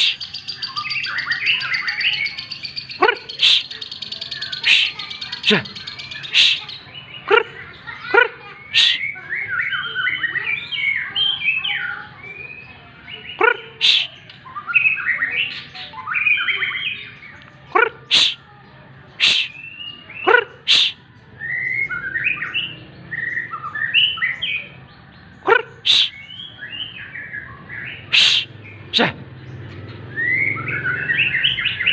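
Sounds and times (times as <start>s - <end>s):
bird warbling song: 0.0s - 18.4s.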